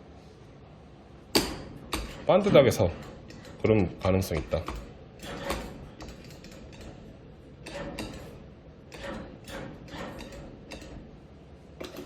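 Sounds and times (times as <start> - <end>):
claw machine clicking and ratcheting: 2.9 - 7.0, 7.6 - 11.1.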